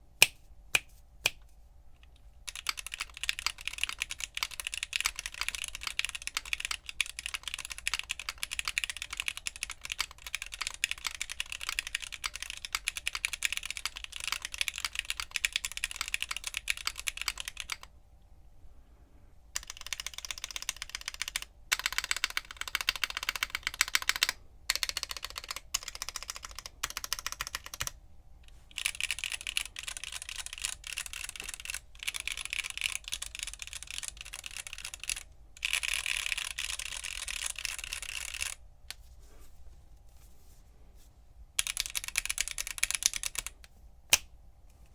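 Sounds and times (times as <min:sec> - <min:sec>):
mechanical keyboard typing: 0:02.5 - 0:17.9, 0:19.6 - 0:28.0, 0:28.7 - 0:38.6, 0:41.6 - 0:43.7.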